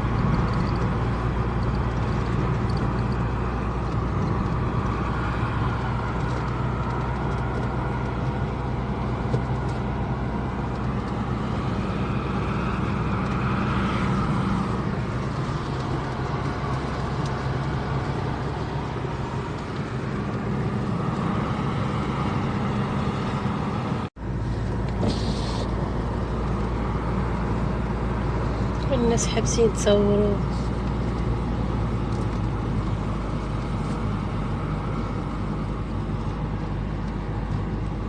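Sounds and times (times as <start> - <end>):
car engine hum: 0.0 - 38.0.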